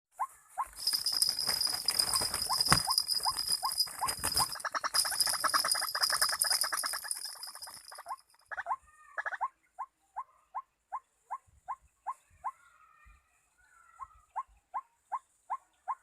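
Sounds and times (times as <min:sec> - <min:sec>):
birds chirping: 0:00.2 - 0:09.8.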